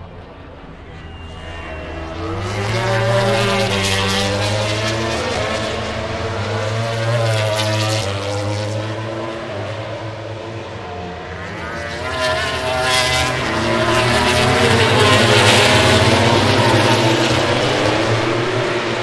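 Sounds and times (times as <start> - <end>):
racing motorcycle engines passing: 0.0 - 19.0.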